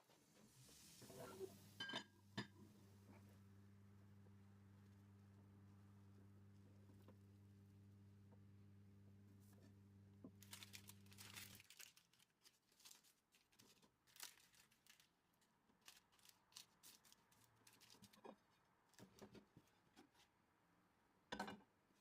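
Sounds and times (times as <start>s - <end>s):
low steady hum: 0.0s - 12.0s
scraping and crinkling clicks: 10.4s - 19.4s.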